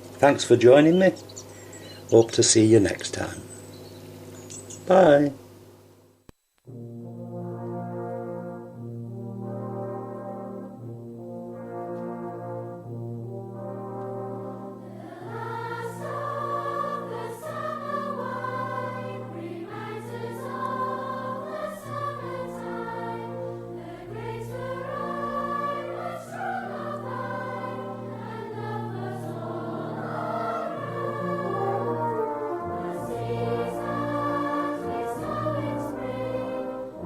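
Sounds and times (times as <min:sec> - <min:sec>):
steady low note: 0:06.7 - 0:37.0
choral singing: 0:14.3 - 0:37.0.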